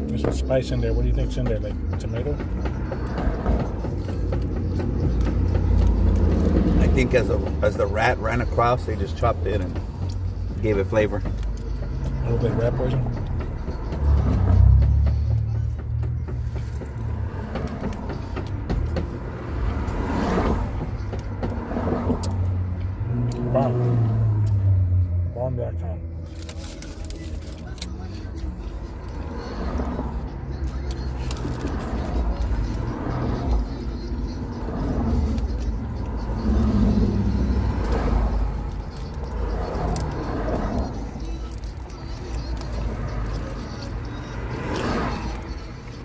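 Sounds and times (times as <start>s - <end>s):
vehicle engine rumble: 0.0s - 46.0s.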